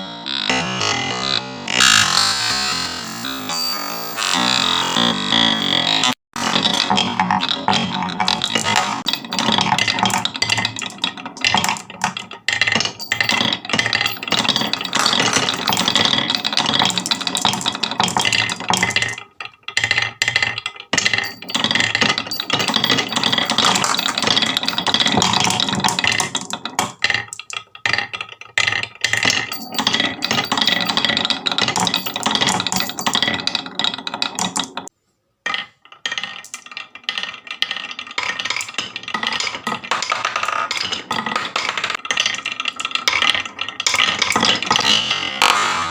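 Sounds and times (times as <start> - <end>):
marbles rattling down wooden run: 6.6 - 34.8, 36.0 - 45.0.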